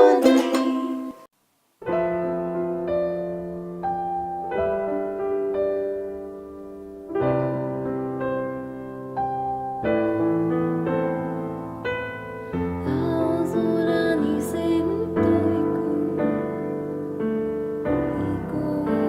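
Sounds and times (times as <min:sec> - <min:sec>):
piano playing slow chords: 0:00.0 - 0:19.0.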